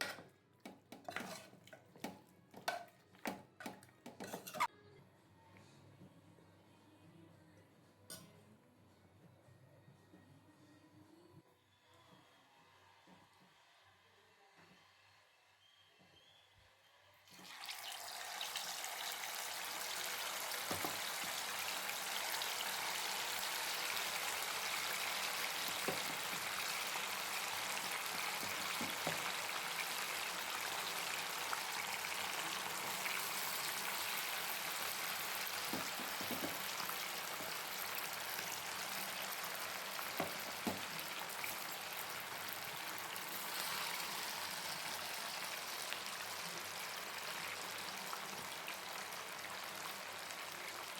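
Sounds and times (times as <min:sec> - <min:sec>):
chicken deep-frying in oil: 0:17.2 - 0:50.9
oil popping and crackling: 0:17.5 - 0:46.4.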